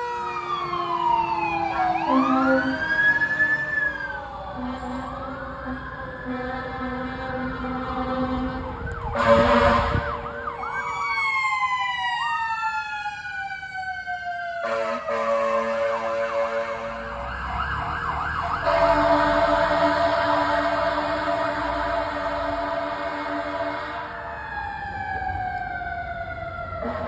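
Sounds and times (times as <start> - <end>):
fire truck sirens wailing: 0.0 - 27.0
fire truck horn blasts: 1.7 - 2.9, 4.5 - 10.5, 14.6 - 17.4, 18.5 - 24.3, 26.7 - 27.0.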